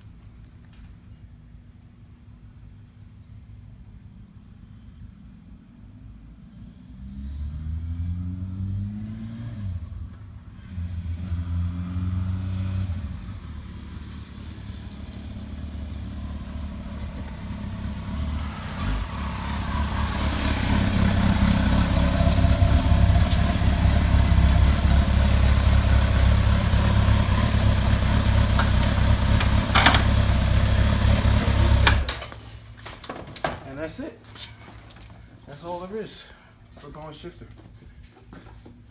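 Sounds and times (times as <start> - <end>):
motorcycle engine revving: 6.8 - 32.1.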